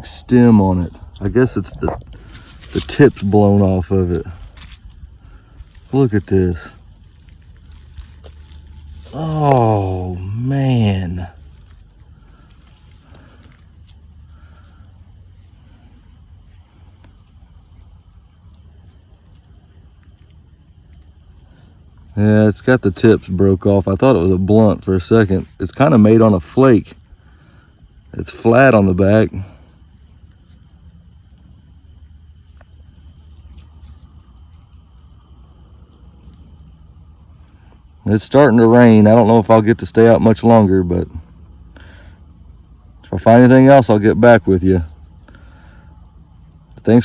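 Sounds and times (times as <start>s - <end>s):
low rumble: 0.0s - 19.4s
insects chirping: 0.0s - 47.0s
low steady rumble: 0.0s - 47.0s.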